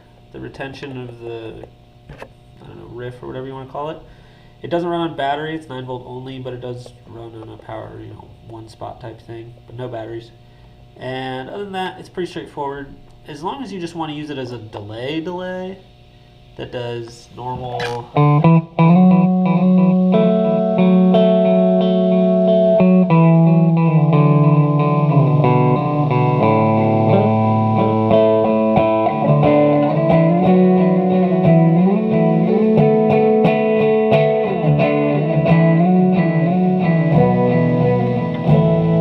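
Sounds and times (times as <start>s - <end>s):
electric guitar with delay echoes: 17.8s - 39.0s.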